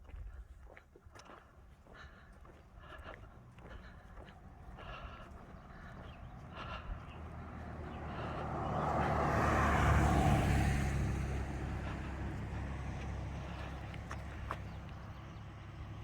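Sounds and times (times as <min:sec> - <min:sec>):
car passing: 0:03.7 - 0:16.0.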